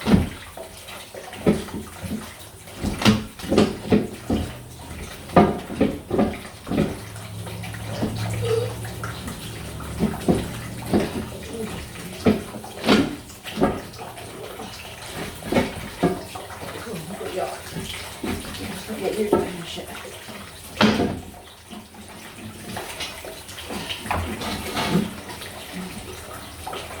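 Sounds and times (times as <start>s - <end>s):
water running and splashing: 0.0s - 27.0s
pipework knocks and clunks: 2.8s - 14.1s.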